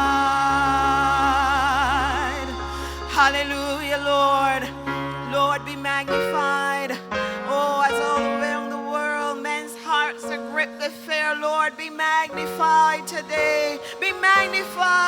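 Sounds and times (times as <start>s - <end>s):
bass notes: 0.0s - 6.1s
person singing: 0.0s - 15.0s
sustained keyboard chords: 0.0s - 15.0s.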